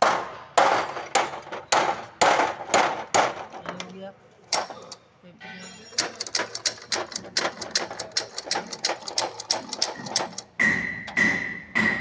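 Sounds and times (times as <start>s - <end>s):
rapid metallic clicks: 6.0s - 11.2s.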